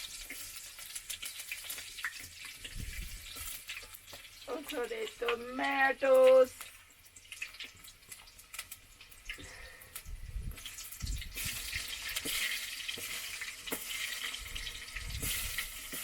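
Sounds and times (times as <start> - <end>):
vegetables sizzling in oil: 0.0 - 16.0
stirring clicks and scrapes: 10.6 - 16.0.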